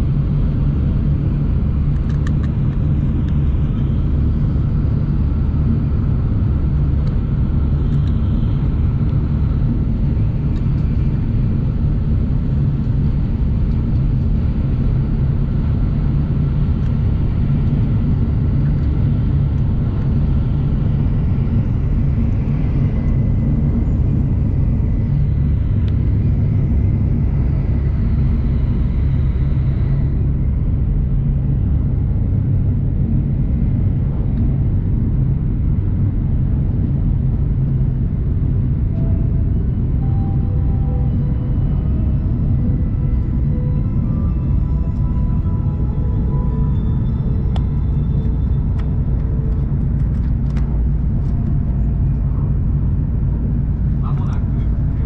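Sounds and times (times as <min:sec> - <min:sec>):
train rumble inside cabin: 0:00.0 - 0:55.0
faint high steady tone: 0:38.9 - 0:49.8.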